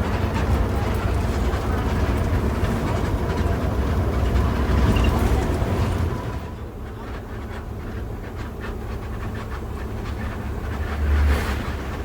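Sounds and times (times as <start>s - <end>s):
bus engine and road noise: 0.0s - 12.0s.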